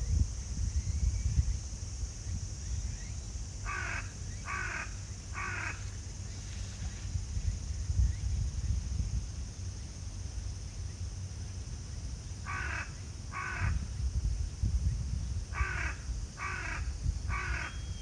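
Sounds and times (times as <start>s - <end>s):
wind rumble on microphone: 0.0s - 4.8s, 5.8s - 10.7s, 13.3s - 18.0s
crow cawing: 3.7s - 5.8s, 12.5s - 13.8s, 15.6s - 17.8s.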